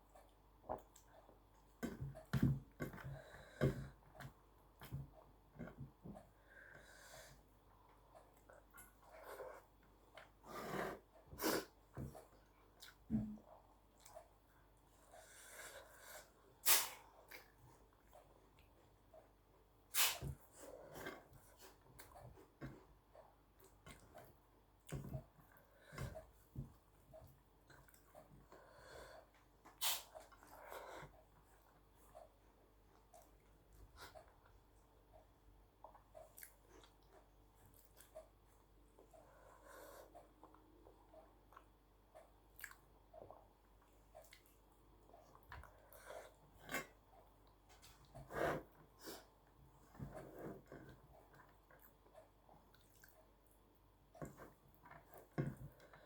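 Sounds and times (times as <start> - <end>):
chewing and mouth noises: 40.4 - 48.0, 50.7 - 53.6
wet chewing: 42.5 - 45.6.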